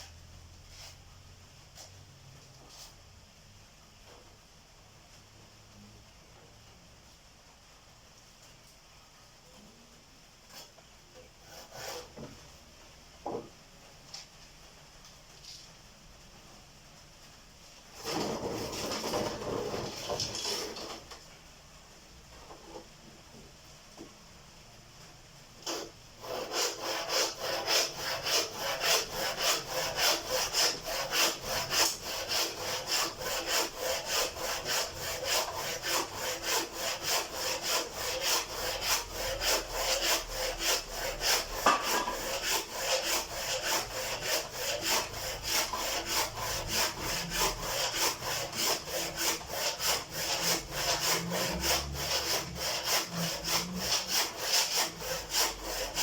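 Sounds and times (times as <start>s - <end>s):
hand saw cutting wood: 11.4s - 12.2s, 18.0s - 21.0s, 25.6s - 56.0s.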